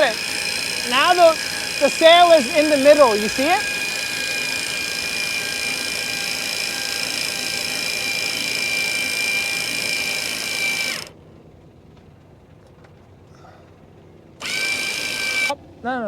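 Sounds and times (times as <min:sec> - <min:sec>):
electric winch whining: 0:00.0 - 0:11.2, 0:14.4 - 0:15.6.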